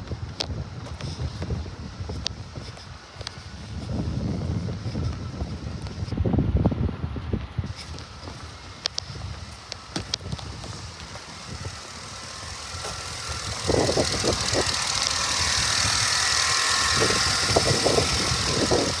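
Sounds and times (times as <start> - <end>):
truck engine idling: 8.0 - 19.0.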